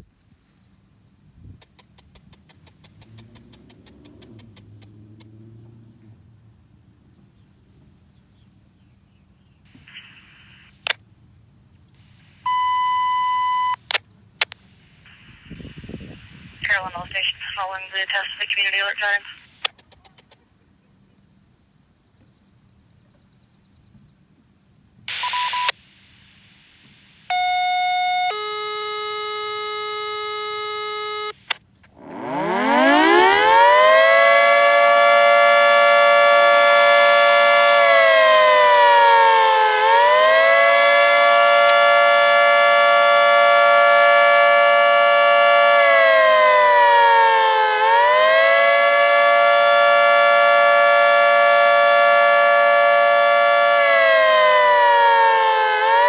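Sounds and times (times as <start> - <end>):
radio beep: 9.8 - 10.9, 12.5 - 14.0, 15.1 - 19.6, 25.1 - 25.8
outdoor warning siren: 12.4 - 13.9, 27.3 - 56.0.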